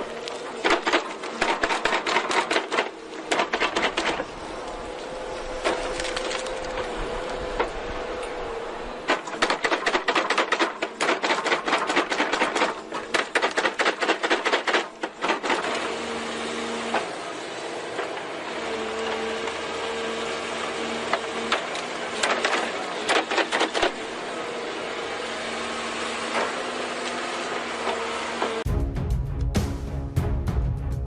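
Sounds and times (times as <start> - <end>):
wood-processing machine whining: 0.0 - 28.7
wood cracking in rapid clatter: 0.2 - 4.8, 5.6 - 7.0, 9.1 - 16.0, 21.1 - 24.0.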